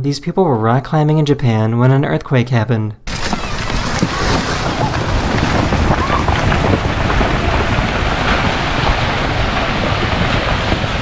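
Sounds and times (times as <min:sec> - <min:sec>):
wind buffeting microphone: 0:03.1 - 0:11.0.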